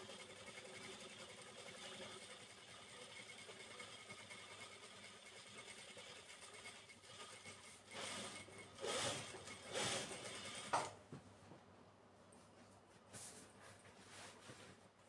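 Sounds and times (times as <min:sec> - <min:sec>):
sewing machine hum: 0:00.0 - 0:11.0
sewing machine noisy bursts: 0:02.9 - 0:10.9.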